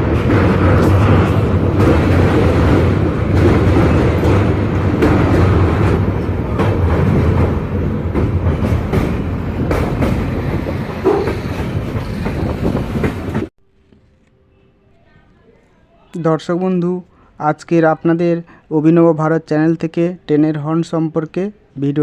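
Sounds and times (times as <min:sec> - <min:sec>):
train rumbling on rails: 0:00.0 - 0:13.5
wheels clattering over rail joints: 0:00.0 - 0:13.5.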